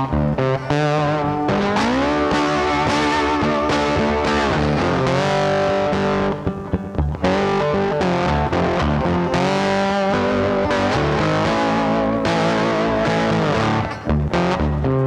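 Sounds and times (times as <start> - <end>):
distorted electric guitar music: 0.0 - 15.0.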